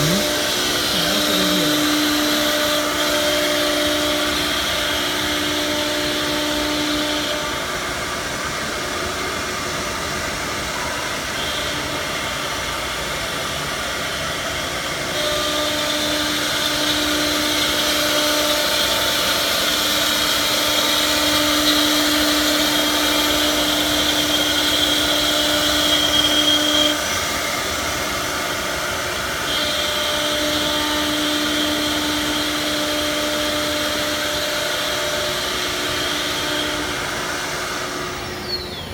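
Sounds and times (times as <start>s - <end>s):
cutting wood: 0.0s - 6.5s, 15.1s - 38.4s
router spindle motors whining: 0.0s - 38.9s.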